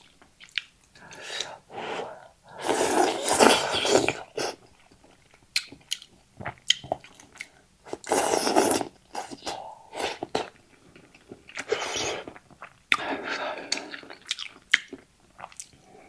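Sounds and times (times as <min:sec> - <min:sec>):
wet mouth clicks and chewing: 0:00.0 - 0:01.6, 0:03.4 - 0:15.9
person slurping noodles: 0:01.0 - 0:04.6, 0:07.9 - 0:10.5, 0:11.6 - 0:12.4, 0:13.0 - 0:14.2.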